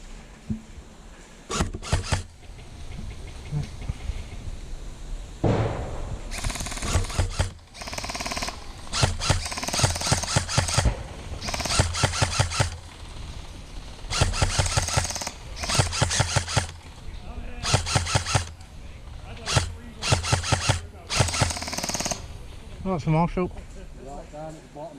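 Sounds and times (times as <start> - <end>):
airsoft guns firing bursts: 1.5 - 2.4, 6.3 - 16.9, 17.6 - 18.6, 19.4 - 22.4.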